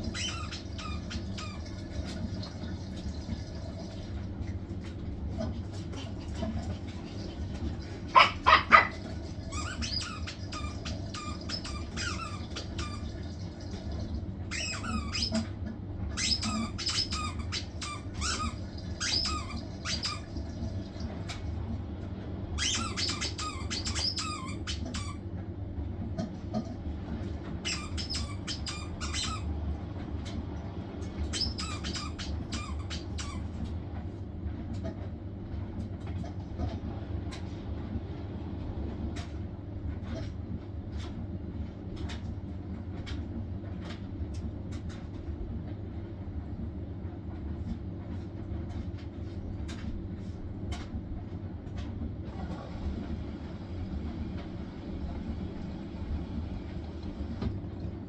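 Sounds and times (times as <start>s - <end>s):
washing machine humming on spin: 0.0s - 58.0s.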